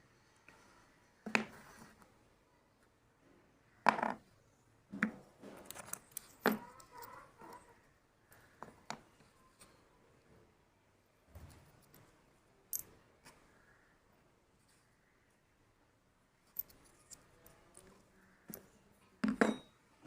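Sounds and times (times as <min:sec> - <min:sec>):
hard objects knocking and clattering: 0:04.9 - 0:06.9, 0:19.2 - 0:19.8.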